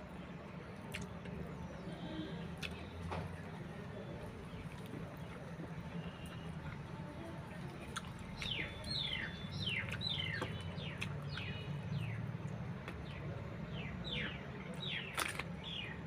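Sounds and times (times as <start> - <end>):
bird chirping: 8.2 - 12.3.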